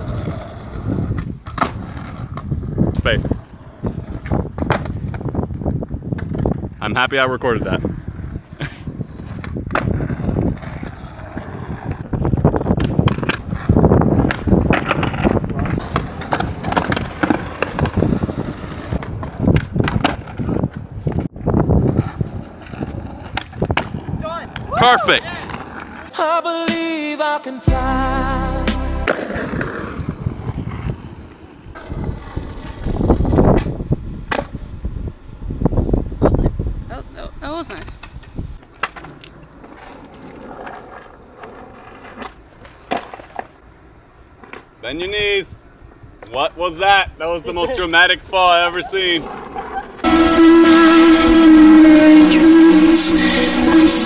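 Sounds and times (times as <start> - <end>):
wind buffeting microphone: 0.0 - 25.8, 29.3 - 38.6
skateboard wheels rolling on concrete: 0.0 - 27.1, 28.4 - 54.0
skateboard clacks: 4.0 - 6.6, 9.0 - 24.7.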